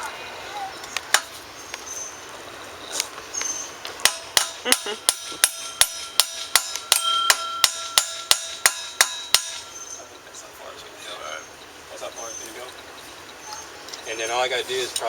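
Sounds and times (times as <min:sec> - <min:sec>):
hammer striking metal: 0:04.0 - 0:10.0.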